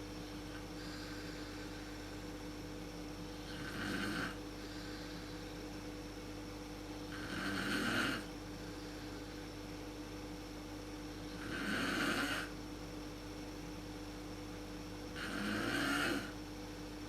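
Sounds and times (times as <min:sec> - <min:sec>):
steady low hum: 0:00.0 - 0:17.0
woman snoring: 0:03.4 - 0:04.4, 0:07.1 - 0:08.3, 0:11.3 - 0:12.6, 0:15.2 - 0:16.4.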